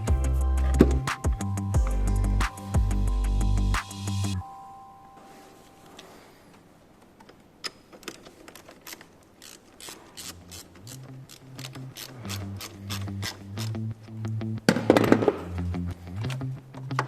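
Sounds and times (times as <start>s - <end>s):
ratchet wrench clicking: 8.5s - 13.8s.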